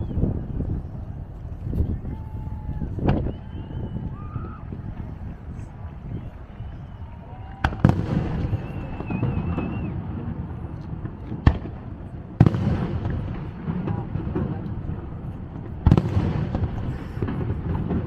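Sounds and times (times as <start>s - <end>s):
fireworks bursting with bangs: 0.0s - 18.0s
fireworks rumbling and crackle: 0.0s - 18.0s
wavering whistle: 3.2s - 4.6s, 8.3s - 10.0s.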